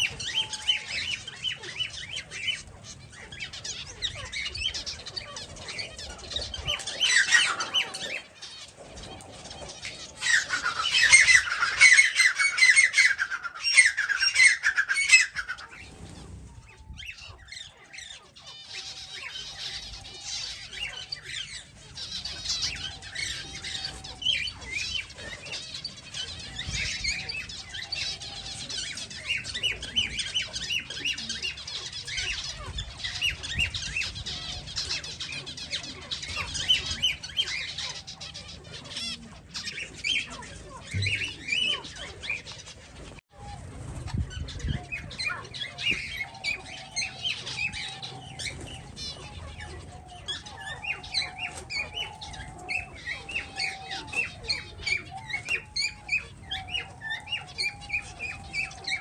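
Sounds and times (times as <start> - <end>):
finches chirping: 17.0 - 42.6.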